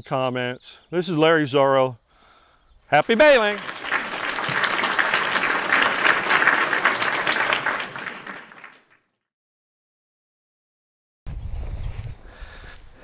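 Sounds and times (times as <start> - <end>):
audience applause: 3.0 - 9.0.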